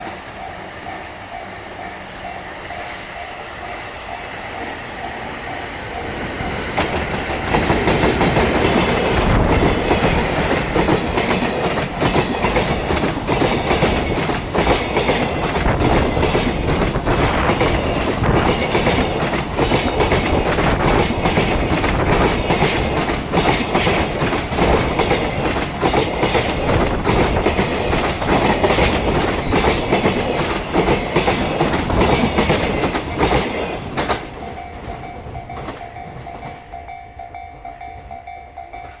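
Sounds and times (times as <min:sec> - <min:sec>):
crossing warning bell ringing: 0:00.0 - 0:06.6, 0:32.6 - 0:39.0
freight train wheels clacking: 0:00.0 - 0:39.0.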